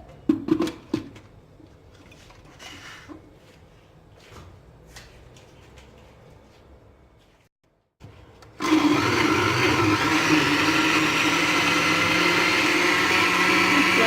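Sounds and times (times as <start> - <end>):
blender running: 8.6 - 14.0.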